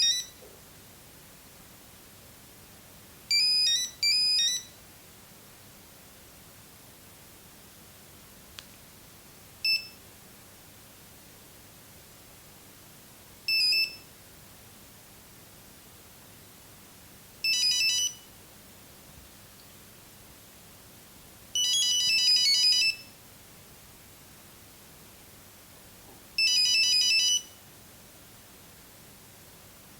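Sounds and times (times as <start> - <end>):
monophonic phone ringtone beeps: 0.0 - 0.4, 3.3 - 4.8, 13.5 - 14.0, 17.4 - 18.3, 21.6 - 23.1, 26.4 - 27.6
faint steady hiss: 0.0 - 29.9.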